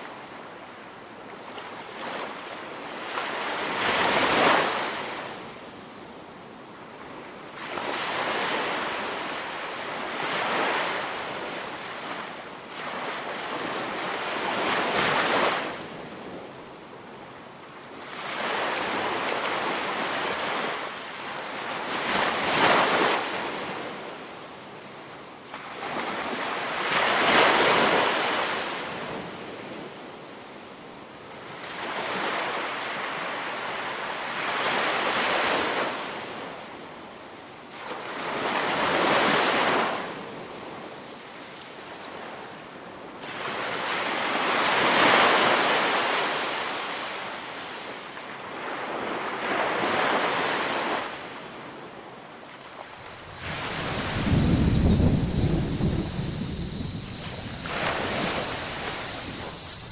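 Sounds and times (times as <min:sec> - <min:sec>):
wind: 0:00.0 - 0:59.9
ocean waves breaking on beach: 0:25.5 - 0:29.9, 0:37.7 - 0:59.9.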